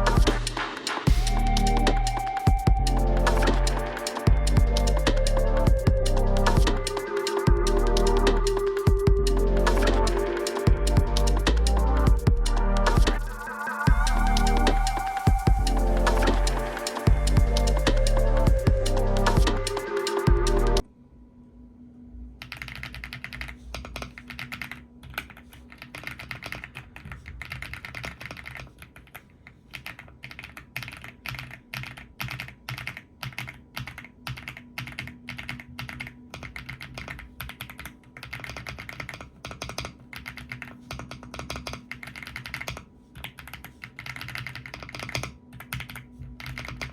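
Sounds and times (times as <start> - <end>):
mechanical keyboard typing: 22.4 - 46.9.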